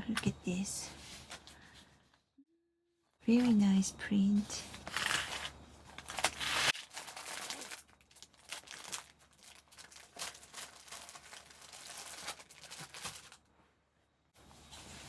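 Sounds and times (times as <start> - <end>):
fabric crinkling and rustling: 4.6 - 13.7.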